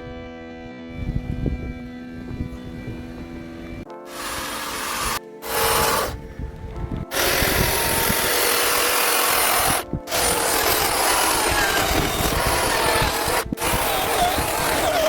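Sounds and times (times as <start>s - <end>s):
chainsaw cutting wood: 4.1s - 6.2s, 7.1s - 15.0s.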